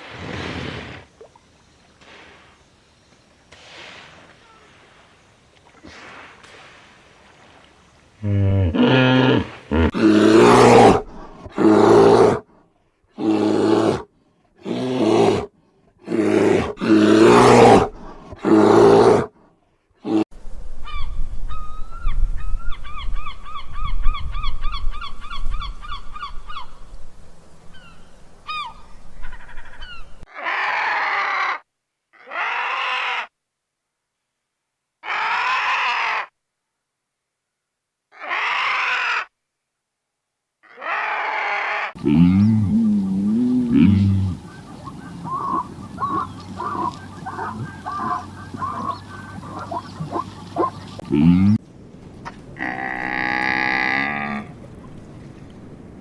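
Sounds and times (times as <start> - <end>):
drawn-out animal calls: 40.8 - 51.6
deep grunting honks: 42.0 - 51.6.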